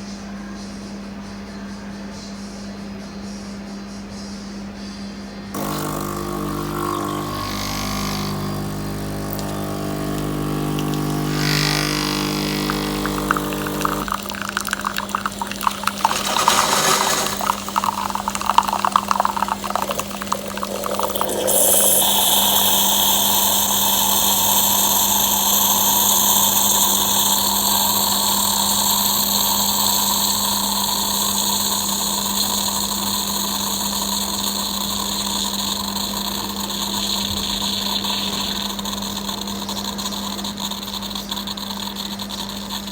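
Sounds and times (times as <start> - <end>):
coffee machine pump humming: 5.5 - 42.9
spluttering and gurgling water: 10.8 - 22.6
hissing rush of liquid: 10.8 - 42.0.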